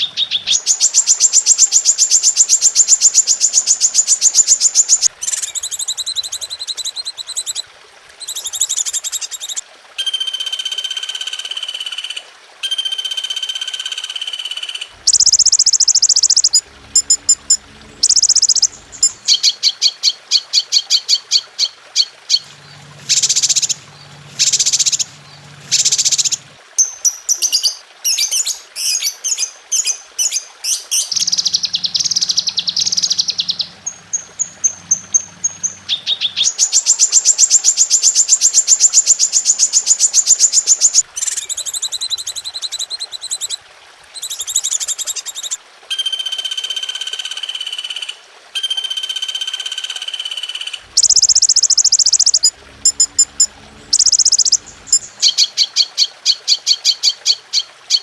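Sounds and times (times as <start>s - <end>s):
songbird chirps and trills: 0.0s - 12.0s, 12.6s - 43.6s, 48.6s - 58.0s.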